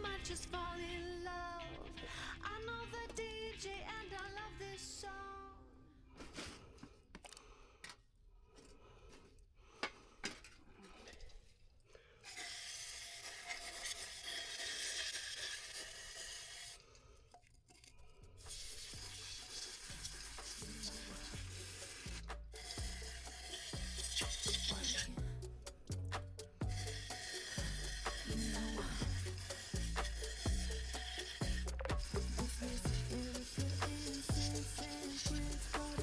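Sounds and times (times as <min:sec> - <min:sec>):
long steady hisses: 0:12.2 - 0:16.9, 0:18.4 - 0:36.0.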